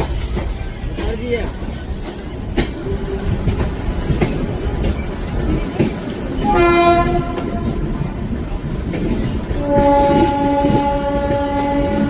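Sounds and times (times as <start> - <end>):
moving train rumble and clatter: 0.0 - 12.0
train horn blasts: 6.4 - 7.8, 9.5 - 12.0.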